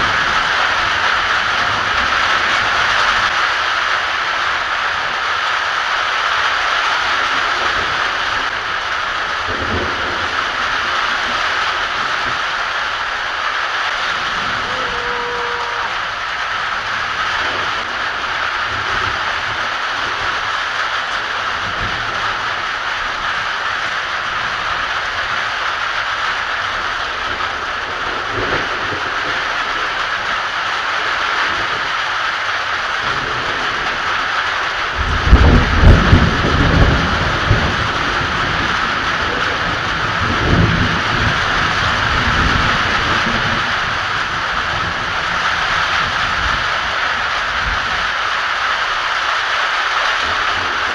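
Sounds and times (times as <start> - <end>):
heavy rain hissing: 0.0 - 50.9
faint low thunder rumbles: 7.3 - 25.5.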